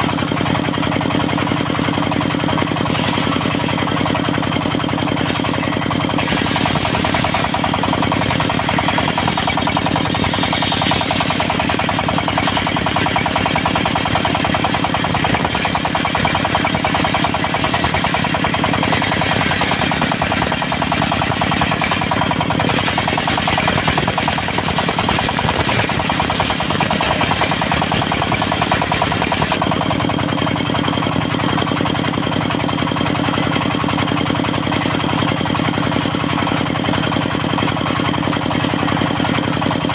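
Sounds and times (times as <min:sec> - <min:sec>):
diesel engine knocking: 0:00.0 - 0:39.9
saw blade cutting wood: 0:02.5 - 0:29.8.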